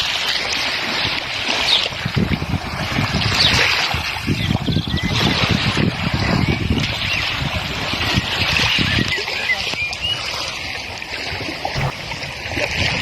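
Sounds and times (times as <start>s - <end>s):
uneven low rumble: 11.8s - 12.5s.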